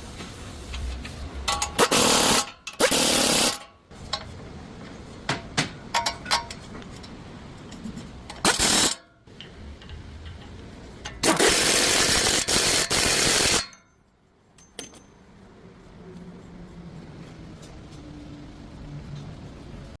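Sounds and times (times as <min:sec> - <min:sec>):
power tool bursts: 0:01.8 - 0:03.6, 0:08.4 - 0:09.0, 0:11.2 - 0:13.7.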